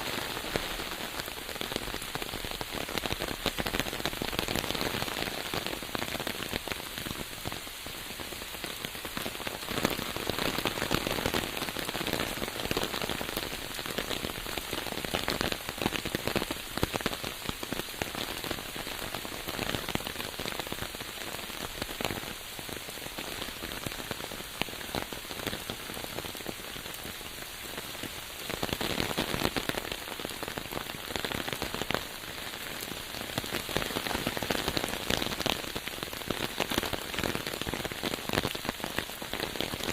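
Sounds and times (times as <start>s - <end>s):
rain pattering on a surface: 0.0s - 39.9s.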